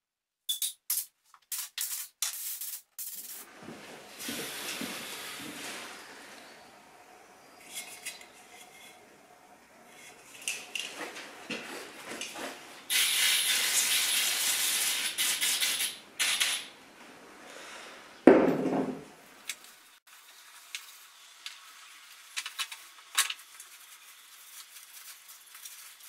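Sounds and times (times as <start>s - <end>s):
spray hissing: 12.9s - 16.7s.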